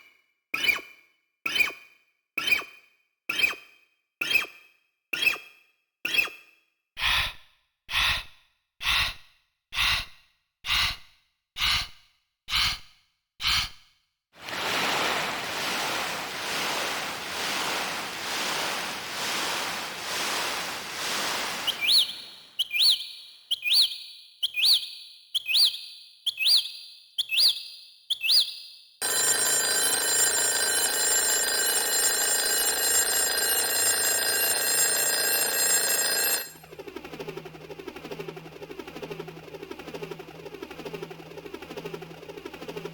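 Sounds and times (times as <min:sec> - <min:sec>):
telephone ring tone: 0:14.4 - 0:22.2, 0:29.0 - 0:36.8
synthesized seashore surf: 0:14.4 - 0:22.6
synthesized bird chirps: 0:21.6 - 0:28.6.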